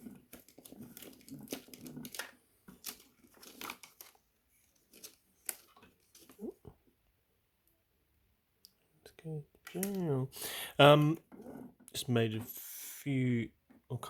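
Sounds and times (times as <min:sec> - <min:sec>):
sharp clicks and rustling: 0:00.0 - 0:04.2.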